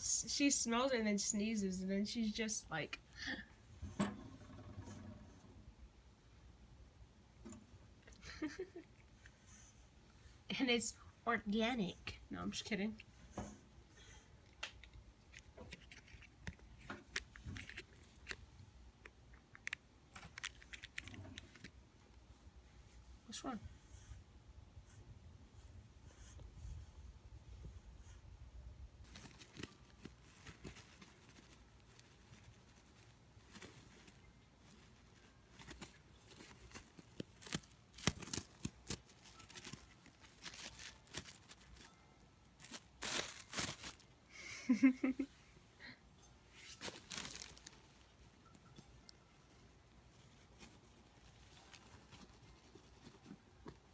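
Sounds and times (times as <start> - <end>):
cat rustling a crinkly bag: 15.2 - 18.7, 20.2 - 21.8, 29.0 - 44.2, 46.5 - 48.5, 49.4 - 53.9.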